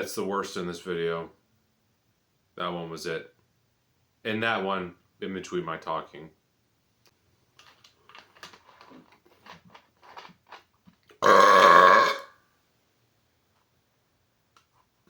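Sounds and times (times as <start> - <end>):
man burping: 11.2 - 12.3.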